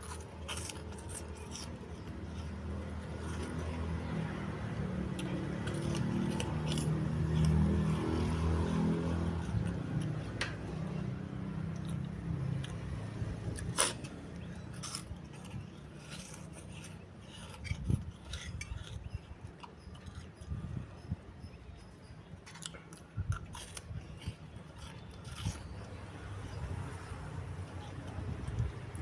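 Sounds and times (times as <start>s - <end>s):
passing vehicle engine rumble: 0.0s - 19.4s.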